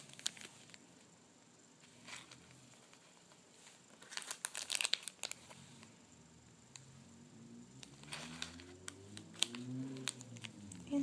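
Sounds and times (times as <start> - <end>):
plastic packaging crinkling: 0.0 - 0.8, 1.9 - 5.9, 7.8 - 11.0.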